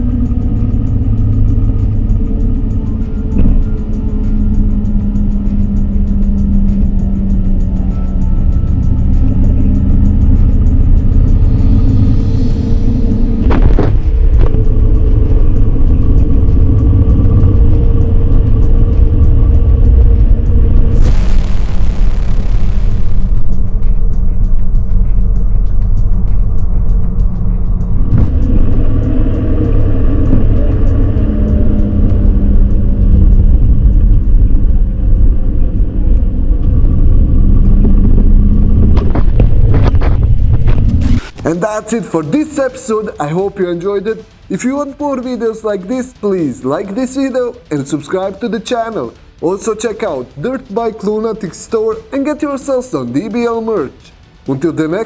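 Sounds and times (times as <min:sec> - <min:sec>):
motorcycle engine running: 0:00.0 - 0:41.5
heavy low rumble: 0:00.0 - 0:55.0.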